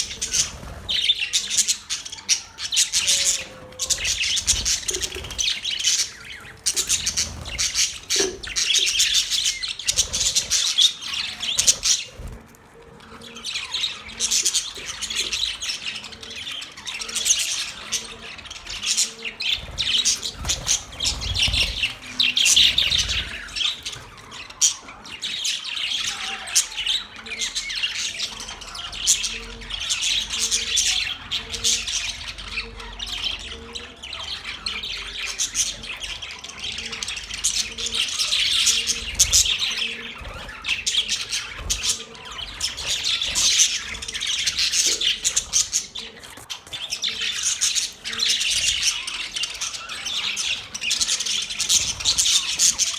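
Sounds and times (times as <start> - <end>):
budgerigars chirping and squawking: 0.0 - 52.9.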